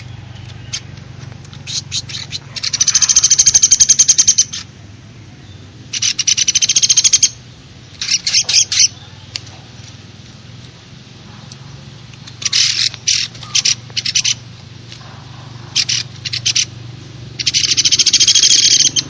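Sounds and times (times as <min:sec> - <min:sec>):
fast high bird trills: 0:00.0 - 0:04.7, 0:05.9 - 0:09.6, 0:12.2 - 0:19.0
bird chirps: 0:00.0 - 0:09.9, 0:12.2 - 0:19.0.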